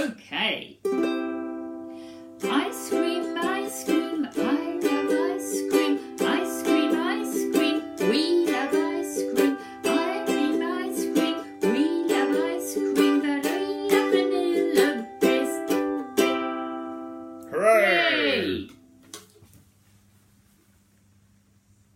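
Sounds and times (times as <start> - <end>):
ukulele strumming: 0.8 - 17.4
person singing: 2.4 - 15.9, 17.5 - 18.7.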